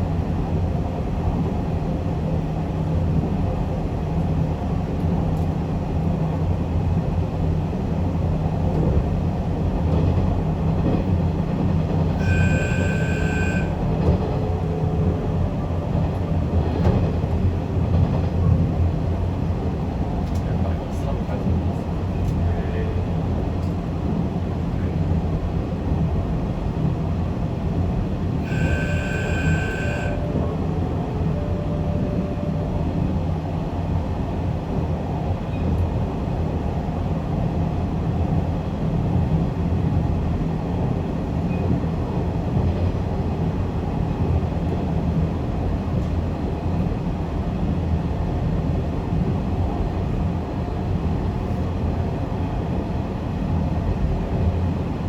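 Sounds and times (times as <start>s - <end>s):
wheels rumbling on rail: 0.0s - 55.0s
brief high tone: 12.2s - 17.4s, 28.4s - 33.8s.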